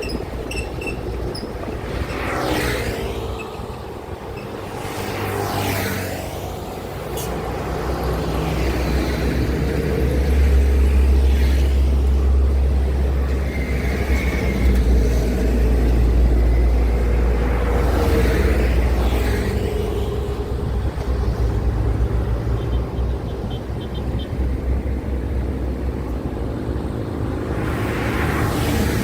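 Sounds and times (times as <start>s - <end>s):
heavy trucks passing: 0.0s - 29.0s.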